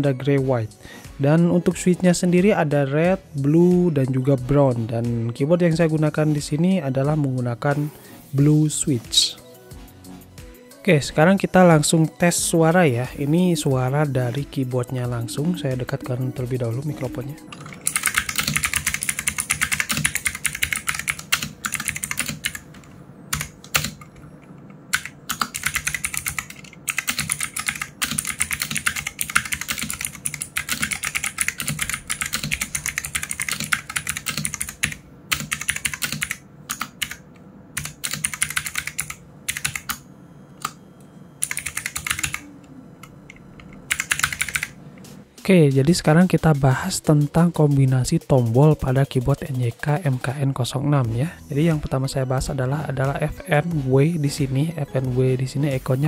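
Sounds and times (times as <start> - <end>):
mechanical keyboard typing: 13.5 - 24.2, 24.9 - 37.2, 37.8 - 40.0, 41.4 - 42.5, 43.6 - 44.8.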